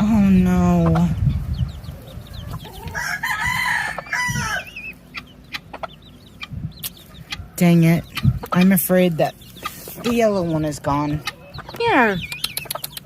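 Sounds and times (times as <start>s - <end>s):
high peeps: 8.0s - 13.0s.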